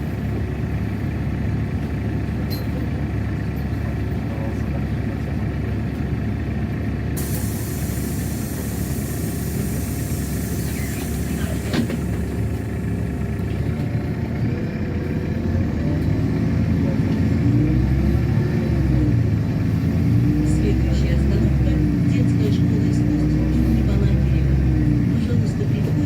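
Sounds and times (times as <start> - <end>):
bus engine rumbling: 0.0 - 26.0
air hiss: 7.2 - 12.3.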